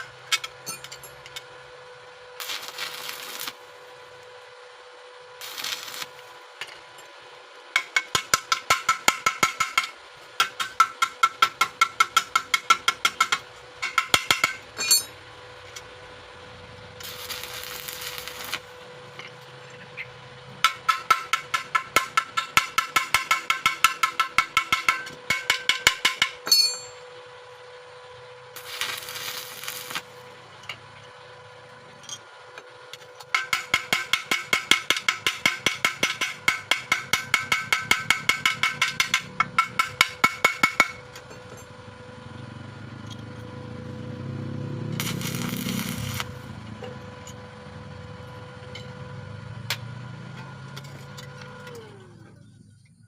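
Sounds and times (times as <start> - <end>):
hammer tapping on steel: 7.8 - 15.1, 20.6 - 27.0, 33.3 - 41.0.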